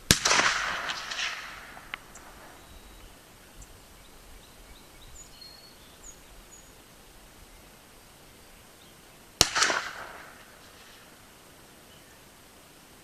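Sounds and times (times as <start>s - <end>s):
rifle gunshot: 0.0s - 2.5s, 9.4s - 11.1s
sharp crack: 0.0s - 2.6s, 9.4s - 11.2s
faint bird chirps: 2.0s - 9.3s.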